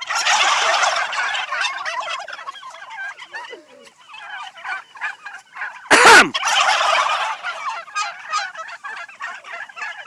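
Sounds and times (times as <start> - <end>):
turkey gobble: 0.0 - 10.0
turkeys warbling: 0.0 - 10.0.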